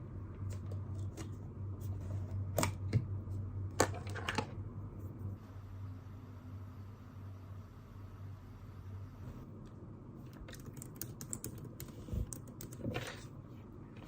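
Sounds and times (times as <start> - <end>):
steady low hum: 0.0 - 14.0.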